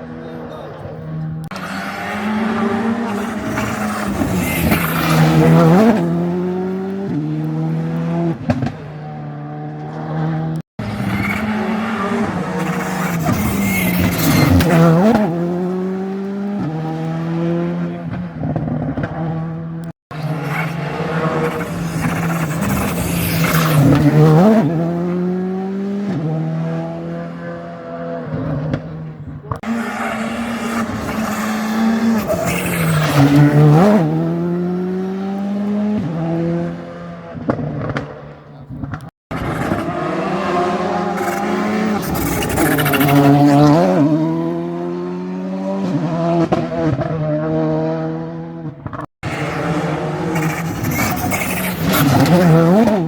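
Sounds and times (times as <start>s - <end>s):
rally car engines revving: 0.0s - 53.0s
car passing by: 0.1s - 28.9s, 39.0s - 53.0s.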